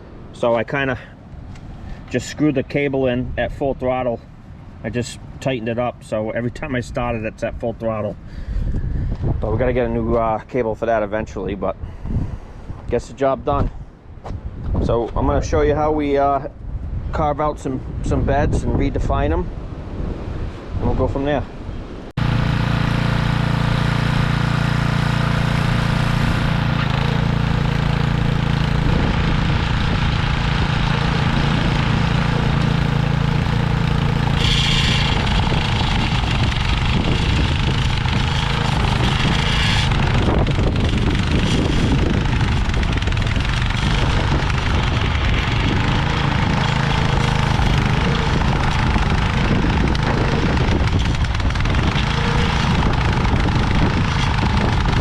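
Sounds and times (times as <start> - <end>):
small gas engine running: 22.2 - 55.0.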